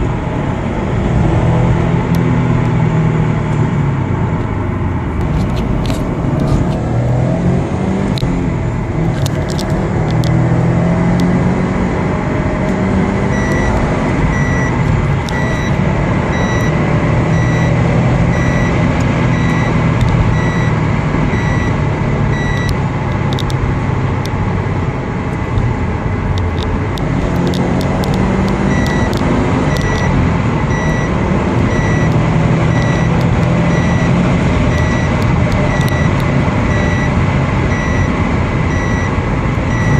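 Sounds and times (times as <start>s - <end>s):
car engine running: 0.0s - 39.9s
high electronic beep: 13.2s - 22.8s, 27.5s - 39.9s.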